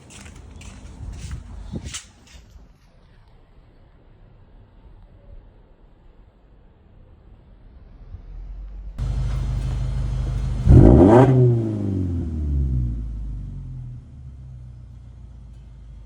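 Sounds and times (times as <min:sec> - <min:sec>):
car engine idling and revving: 0:08.0 - 0:16.0.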